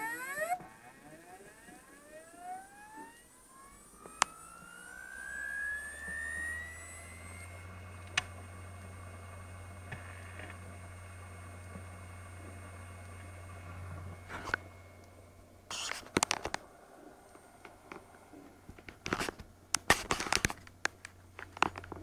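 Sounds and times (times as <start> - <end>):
low steady hum: 0.0 - 22.0
hard drive clicks: 7.4 - 22.0.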